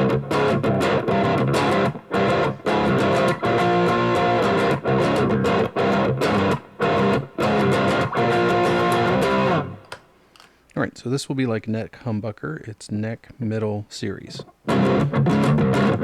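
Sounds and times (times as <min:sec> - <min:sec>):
overdriven electric guitar chords: 0:00.0 - 0:09.9, 0:14.6 - 0:16.0.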